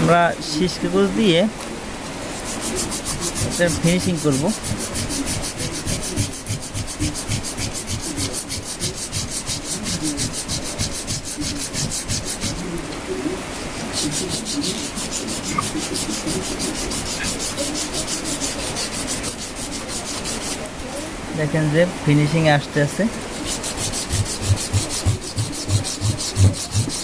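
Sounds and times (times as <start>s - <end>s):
sandpaper rubbing on metal: 2.3s - 12.8s, 13.9s - 20.7s, 23.3s - 27.0s.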